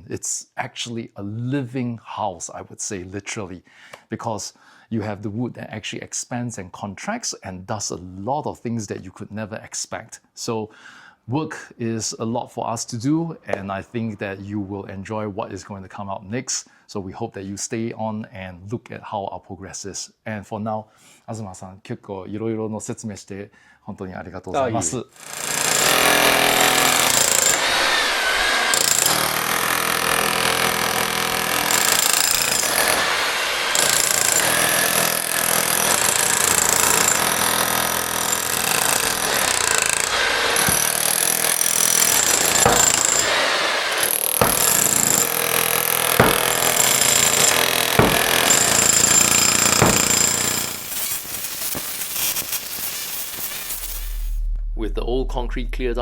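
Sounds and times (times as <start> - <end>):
jackhammer breaking concrete: 25.2 - 54.4
sharp knocks: 42.0 - 43.4, 44.4 - 50.7.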